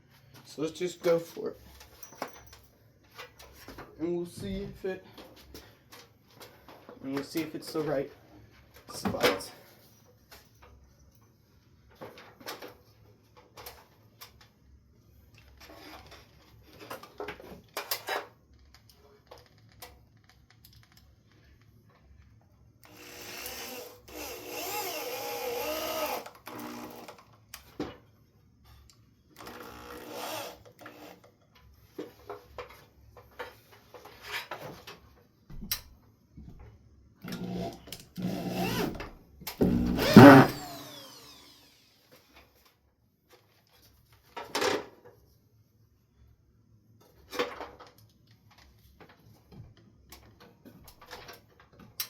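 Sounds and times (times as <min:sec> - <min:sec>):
cordless drill whirring: 0:22.9 - 0:27.1, 0:29.4 - 0:31.2, 0:37.3 - 0:39.0, 0:39.6 - 0:42.0.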